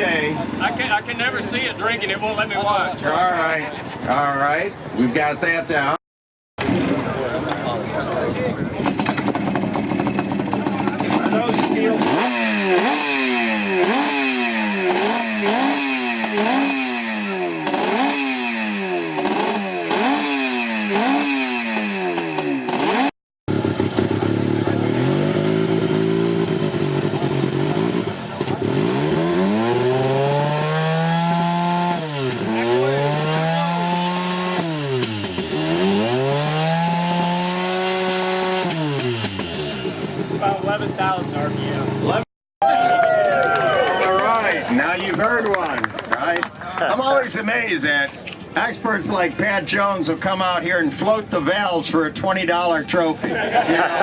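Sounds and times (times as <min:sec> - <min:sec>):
motorcycle engine revving: 0:00.0 - 0:03.5, 0:08.7 - 0:42.3.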